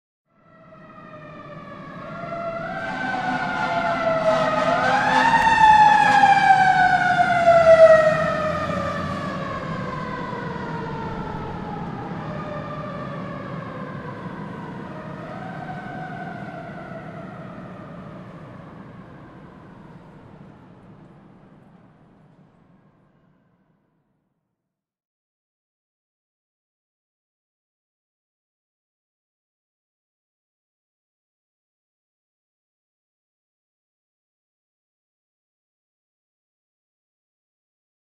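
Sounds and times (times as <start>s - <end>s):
fire truck siren wailing: 0.3s - 22.6s.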